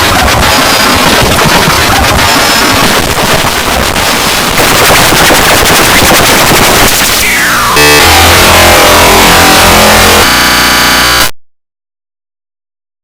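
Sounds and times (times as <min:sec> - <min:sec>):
rapid crackling clatter: 0:00.0 - 0:07.4
loud buzzing tone: 0:00.0 - 0:11.3.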